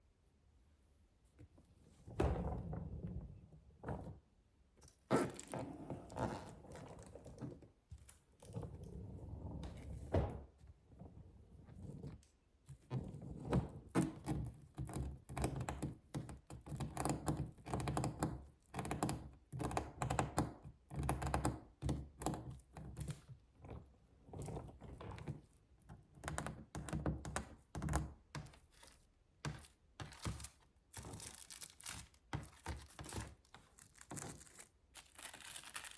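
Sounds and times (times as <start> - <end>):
suitcase rustling and sliding: 5.1 - 7.3.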